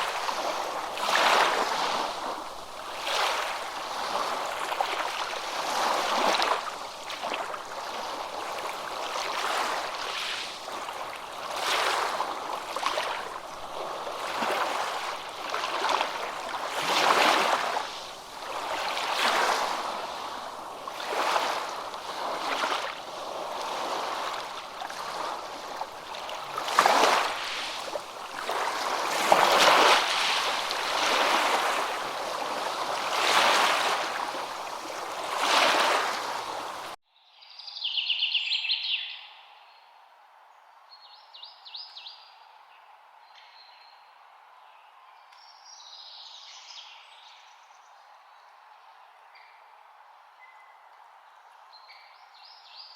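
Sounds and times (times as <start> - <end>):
water rushing in surges: 0.0 - 37.0.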